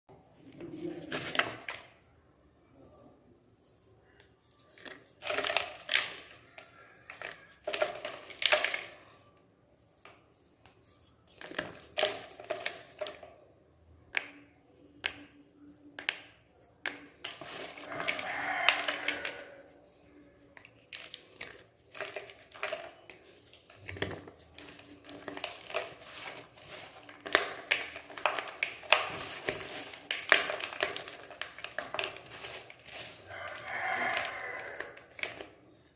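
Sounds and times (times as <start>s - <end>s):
chalk cracking and crunching: 16.6s - 35.9s.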